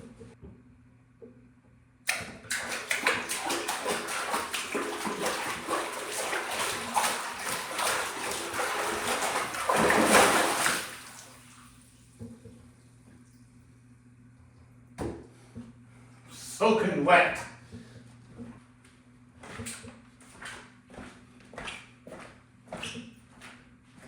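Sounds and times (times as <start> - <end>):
water splashing in small tub: 2.1 - 11.9.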